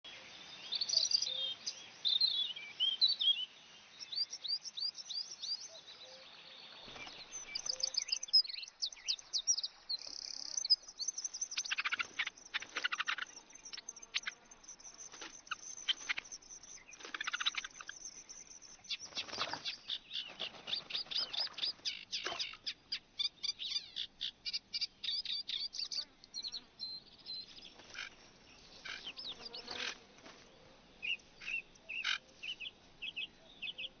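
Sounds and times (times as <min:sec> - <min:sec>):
bird chirps and trills: 0:06.8 - 0:30.0.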